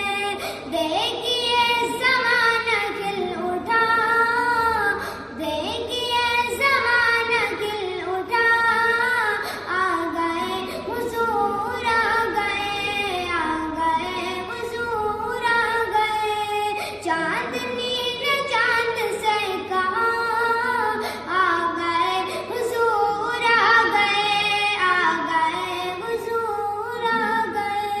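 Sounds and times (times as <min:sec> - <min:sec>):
person singing devotional song: 0:00.0 - 0:28.0.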